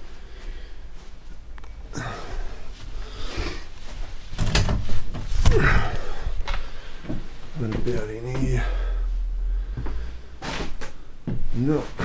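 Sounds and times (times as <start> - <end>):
door knocks and rattles: 4.4 - 5.5.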